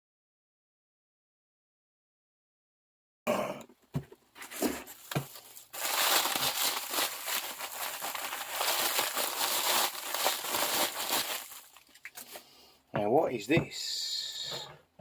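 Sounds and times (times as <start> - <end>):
packaging crinkling and tearing: 4.4 - 12.4.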